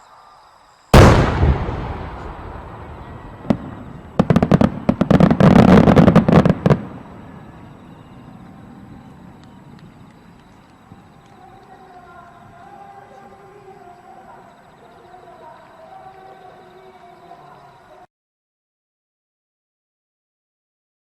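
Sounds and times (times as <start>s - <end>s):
sharp crack: 1.0s - 7.2s
rapid crackling bangs: 1.0s - 7.3s
firework bang: 1.0s - 7.8s.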